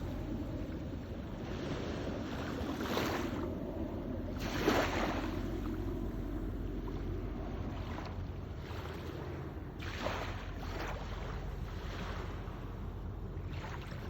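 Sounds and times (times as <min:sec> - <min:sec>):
small waves washing onto shore: 0:00.0 - 0:14.0
steady low rumble: 0:00.0 - 0:14.0.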